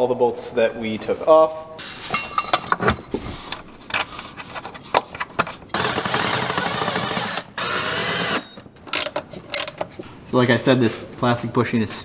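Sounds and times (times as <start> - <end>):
power driver running: 5.4 - 11.4
metallic clicks of bolts: 8.8 - 9.8, 10.6 - 11.2.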